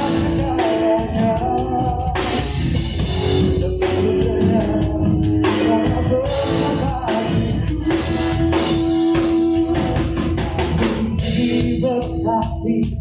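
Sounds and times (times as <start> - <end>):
live rock band: 0.0 - 13.0
person singing long notes: 3.2 - 12.7.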